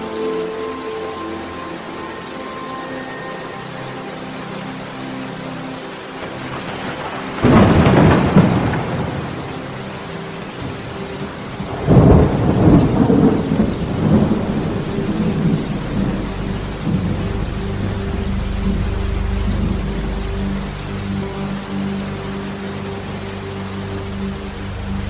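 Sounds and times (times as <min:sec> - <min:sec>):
steady rain: 0:00.0 - 0:25.0
thunderclaps rumbling: 0:06.4 - 0:09.6, 0:10.6 - 0:20.8.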